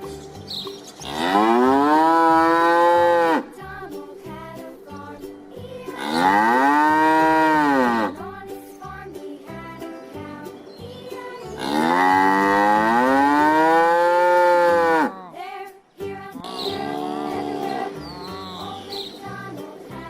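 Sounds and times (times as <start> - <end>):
light background music: 0.0 - 20.0
cow mooing: 1.0 - 3.5, 6.0 - 8.2, 11.6 - 15.4, 16.4 - 18.6.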